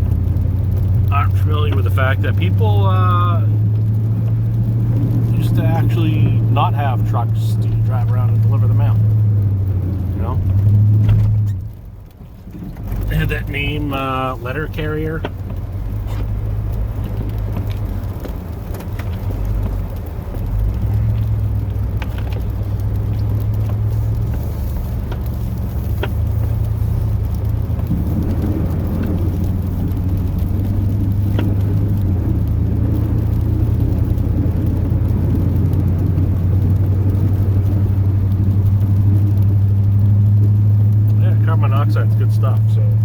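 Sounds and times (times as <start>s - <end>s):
truck engine droning: 0.0s - 43.0s
faint clicks: 15.1s - 43.0s.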